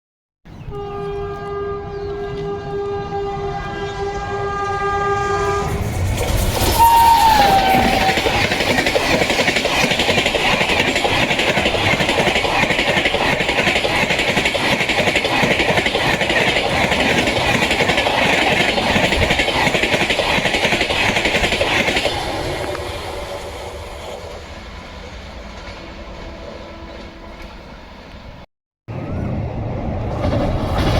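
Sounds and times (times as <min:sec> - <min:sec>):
train horn long blast: 0:00.7 - 0:06.0, 0:06.6 - 0:08.4, 0:25.6 - 0:27.8
train wheels clattering on rails: 0:05.7 - 0:26.0.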